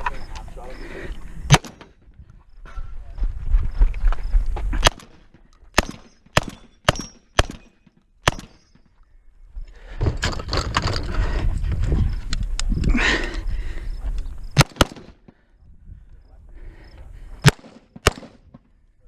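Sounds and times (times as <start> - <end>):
rumbling rustling noise: 1.2 - 5.5, 9.7 - 17.4
gunshots: 1.5 - 1.9, 4.8 - 8.8, 14.6 - 15.2, 17.4 - 18.6.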